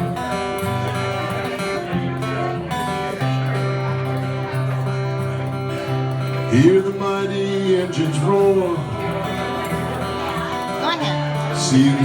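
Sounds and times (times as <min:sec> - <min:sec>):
acoustic guitar strumming: 0:00.0 - 0:12.0
person singing: 0:06.5 - 0:12.0.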